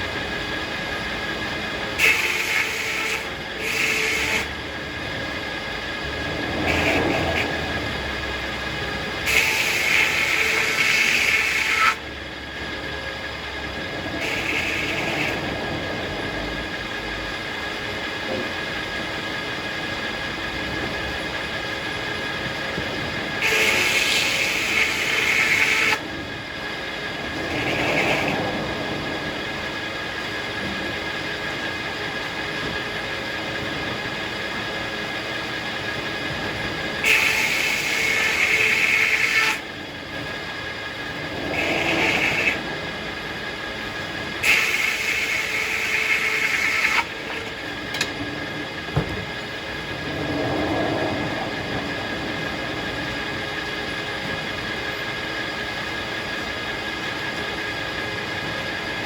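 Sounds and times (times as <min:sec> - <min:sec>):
circular saw blade whining: 0:00.0 - 0:59.0
saw cutting into wood: 0:02.0 - 0:04.6, 0:06.6 - 0:07.7, 0:09.2 - 0:12.0, 0:14.2 - 0:15.4, 0:23.4 - 0:26.0, 0:27.4 - 0:28.4, 0:37.0 - 0:39.6, 0:41.5 - 0:42.6, 0:44.4 - 0:47.6.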